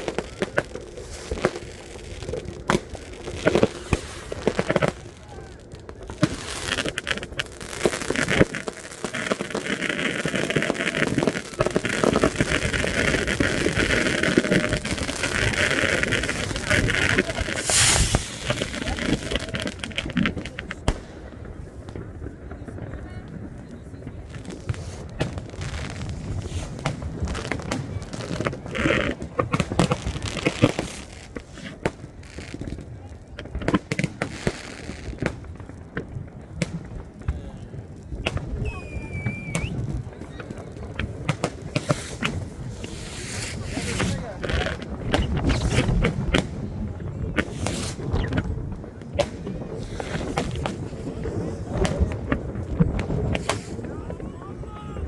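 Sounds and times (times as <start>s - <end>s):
sharp firework bangs: 0.0s - 37.4s, 38.1s - 54.0s
fireworks crackling: 0.0s - 55.0s
brief hiss: 47.5s - 48.0s.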